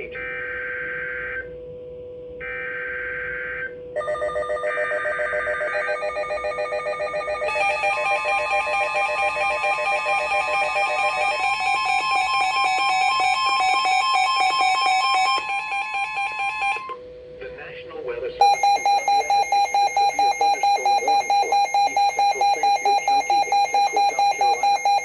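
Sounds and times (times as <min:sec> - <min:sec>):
pulsing electronic alert alarm: 0:04.0 - 0:16.9, 0:18.4 - 0:25.0.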